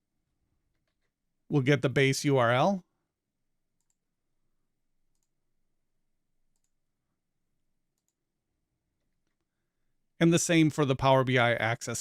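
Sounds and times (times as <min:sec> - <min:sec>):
computer mouse clicks: 0:03.8 - 0:04.0, 0:05.1 - 0:05.4, 0:06.5 - 0:06.8, 0:07.9 - 0:08.2.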